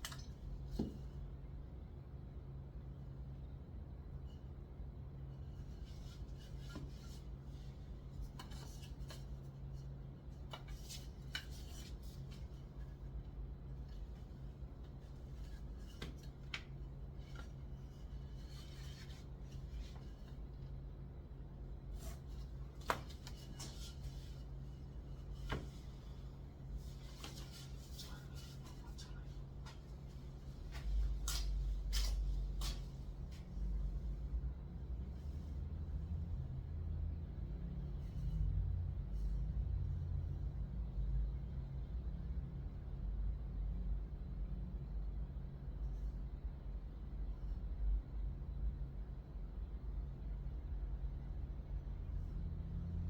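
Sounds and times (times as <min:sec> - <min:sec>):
steady low hum: 0:00.0 - 0:53.0.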